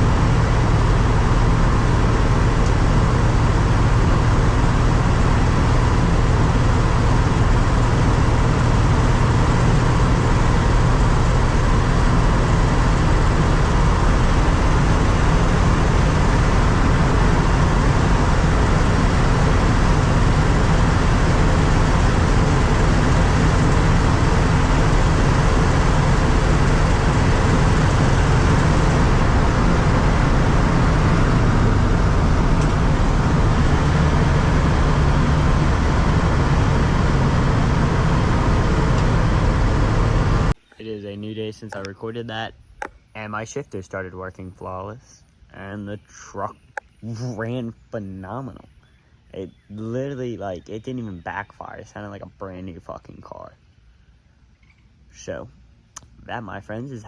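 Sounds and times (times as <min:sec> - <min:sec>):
truck engine running: 0:00.0 - 0:40.6
road noise: 0:00.0 - 0:57.0.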